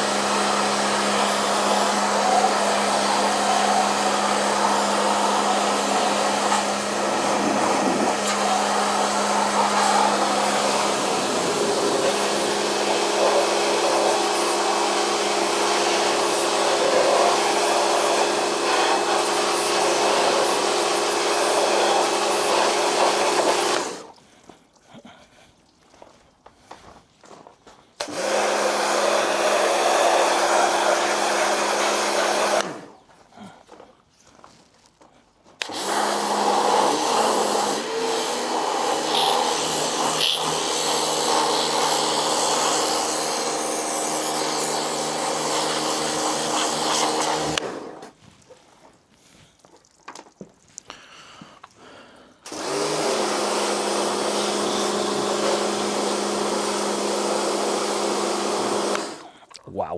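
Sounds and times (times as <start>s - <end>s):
pressure washer motor hum: 0.0s - 24.1s, 28.0s - 32.9s, 35.6s - 48.1s, 52.4s - 59.2s
water jet hissing: 0.0s - 24.1s, 35.6s - 48.2s.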